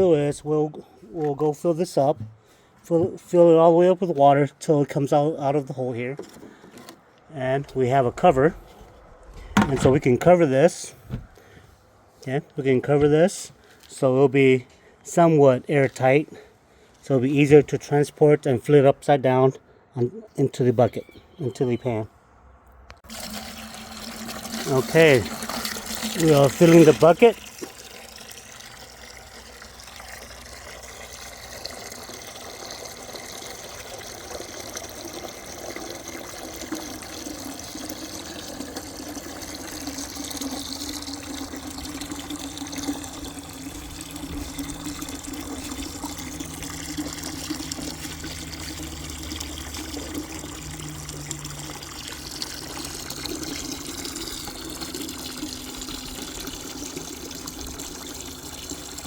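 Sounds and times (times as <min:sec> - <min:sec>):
water running into a bucket: 0:08.2 - 0:10.3, 0:23.0 - 0:59.0.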